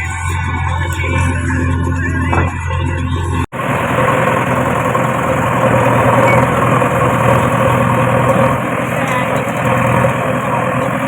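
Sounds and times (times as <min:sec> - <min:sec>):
diesel engine running: 0:00.0 - 0:11.0.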